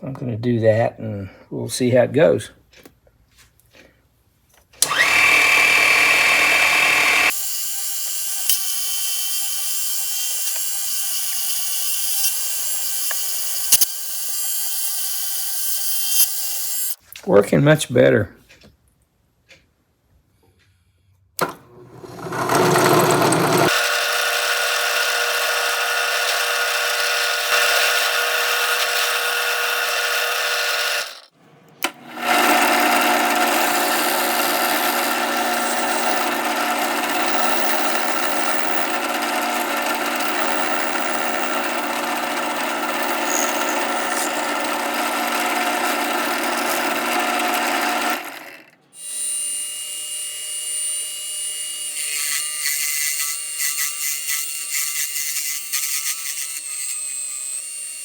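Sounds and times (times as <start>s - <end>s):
lathe motor whining: 4.8s - 17.0s, 21.4s - 48.8s.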